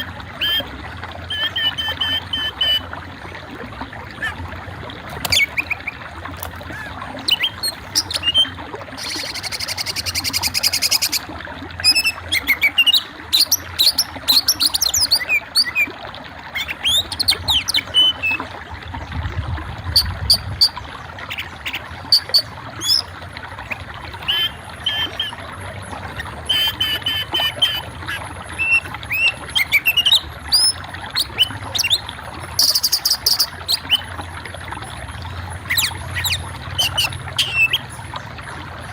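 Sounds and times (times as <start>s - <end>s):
buzzy bird trill: 1.3s - 2.8s, 5.1s - 11.2s, 23.7s - 25.4s, 26.1s - 32.0s, 32.6s - 34.1s, 35.6s - 37.9s.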